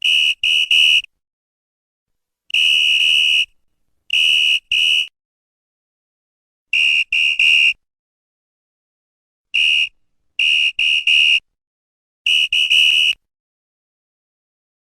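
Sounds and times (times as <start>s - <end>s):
referee's whistle blasts: 2.5s - 3.5s, 4.1s - 5.1s, 9.6s - 11.5s, 12.3s - 13.3s.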